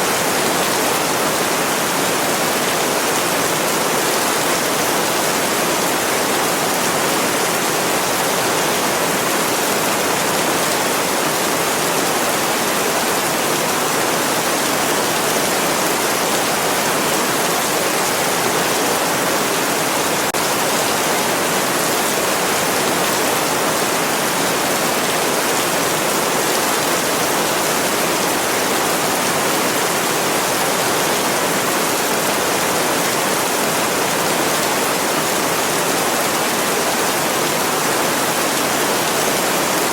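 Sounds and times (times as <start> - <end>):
heavy rain: 0.0 - 39.9.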